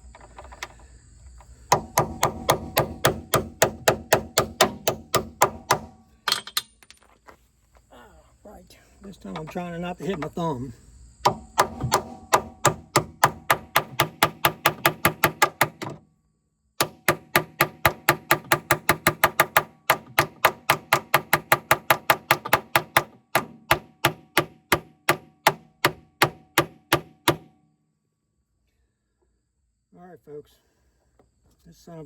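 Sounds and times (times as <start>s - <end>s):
hammer striking metal tool: 1.7s - 6.7s, 11.2s - 16.0s, 16.8s - 27.5s.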